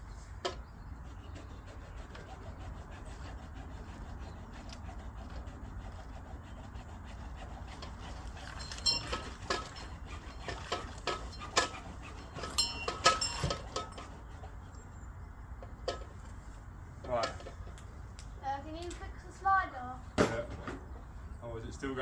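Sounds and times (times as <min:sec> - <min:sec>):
metal clinks and knocks: 0:08.4 - 0:14.2.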